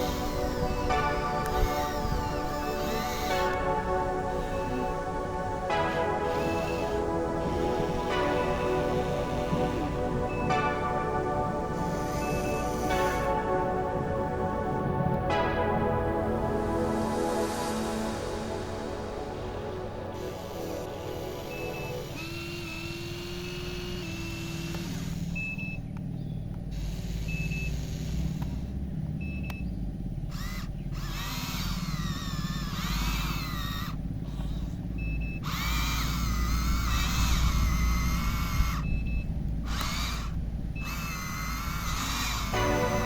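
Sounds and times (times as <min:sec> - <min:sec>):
high squeals: 0:00.0 - 0:13.9, 0:15.6 - 0:25.8, 0:30.3 - 0:43.0
excavator engines rumbling: 0:00.0 - 0:17.1, 0:18.0 - 0:43.0
travel alarm beeping: 0:10.2 - 0:10.6, 0:11.6 - 0:13.2, 0:21.4 - 0:22.9, 0:25.4 - 0:25.8, 0:27.3 - 0:27.8, 0:29.2 - 0:29.7, 0:35.0 - 0:35.5, 0:37.2 - 0:39.4.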